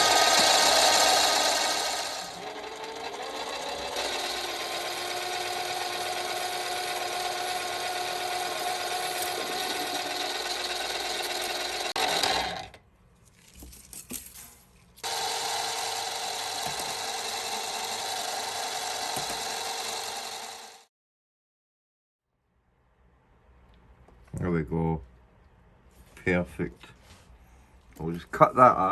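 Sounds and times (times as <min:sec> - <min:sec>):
lathe motor whining: 0:00.0 - 0:12.8, 0:15.0 - 0:20.9.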